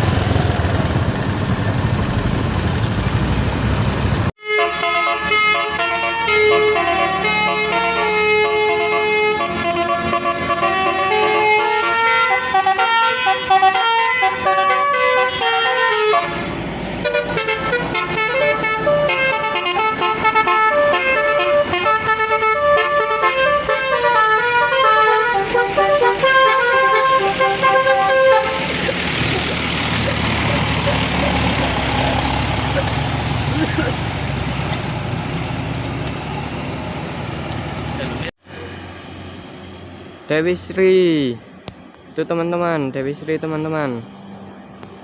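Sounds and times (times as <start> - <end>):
bus melody horn: 4.4 - 33.1.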